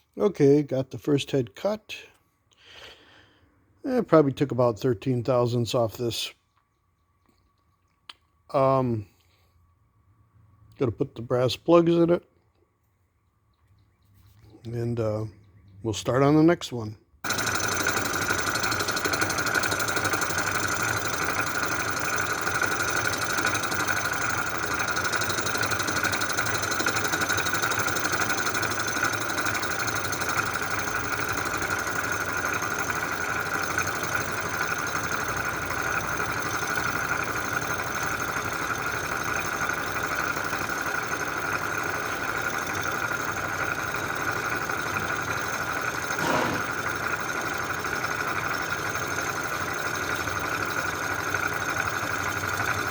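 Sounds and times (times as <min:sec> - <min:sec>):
surfacing machine whining: 0:17.2 - 0:52.9.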